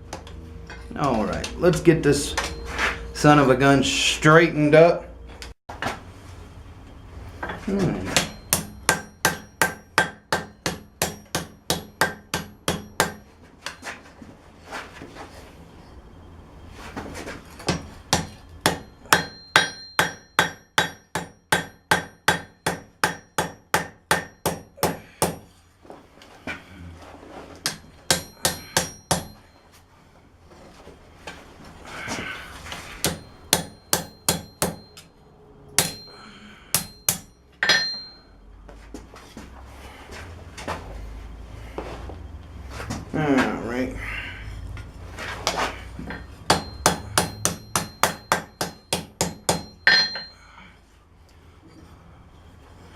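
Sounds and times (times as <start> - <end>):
hammer striking steel on anvil: 7.4 - 13.8, 17.6 - 25.5, 27.6 - 29.6, 33.0 - 35.1, 35.8 - 38.2, 46.0 - 50.5.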